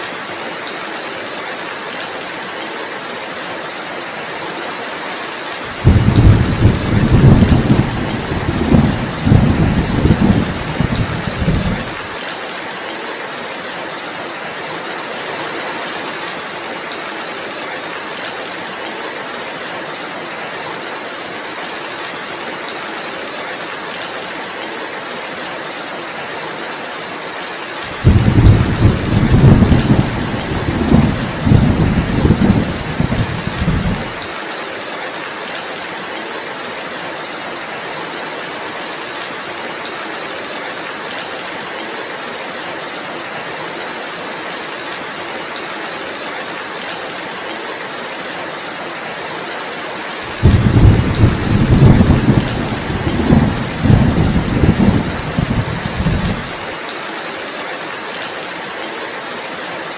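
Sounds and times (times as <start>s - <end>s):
heavy rainfall: 0.0s - 59.9s
deep rumble of thunder: 5.8s - 12.0s, 27.9s - 34.2s, 50.3s - 56.6s.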